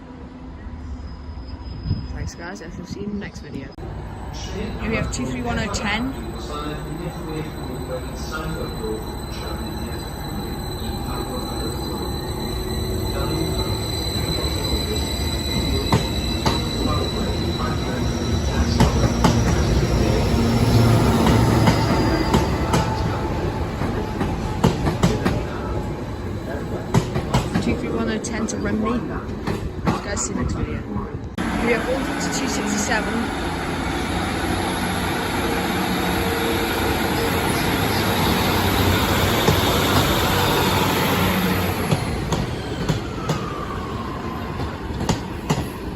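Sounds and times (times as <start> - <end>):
train engine hum: 0.0 - 45.9
train rumble and wheel noise: 0.0 - 45.9
faint wheel squeal: 6.1 - 23.2.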